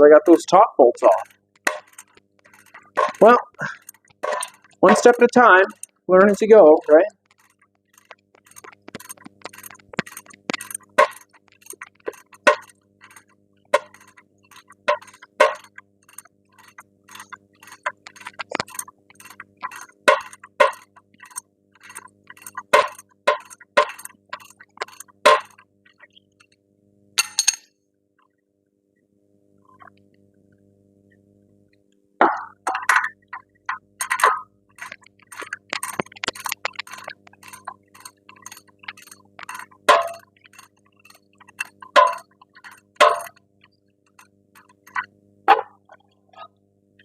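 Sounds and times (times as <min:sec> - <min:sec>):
faint steady hum: 0:00.0 - 0:47.0
metallic clicks of hand tools: 0:01.1 - 0:06.4.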